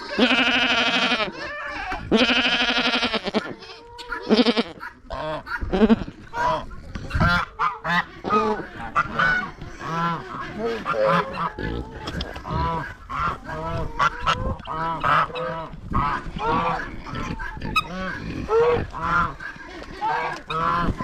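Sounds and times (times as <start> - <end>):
goats bleating: 0.0 - 6.6, 7.4 - 21.0
fowl honking: 1.8 - 21.0.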